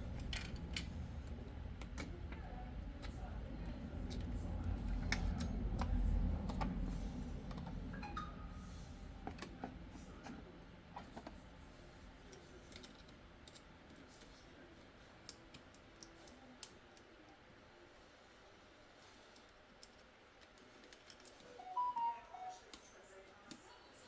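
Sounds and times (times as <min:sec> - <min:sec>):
light clicks of small parts and tools: 0:00.0 - 0:08.3, 0:12.2 - 0:17.4, 0:19.0 - 0:21.5
low rumble of handling noise: 0:00.0 - 0:16.4.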